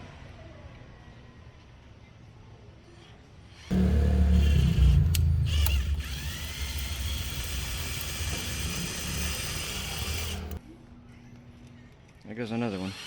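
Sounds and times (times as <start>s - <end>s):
electric drill running: 3.7s - 10.6s.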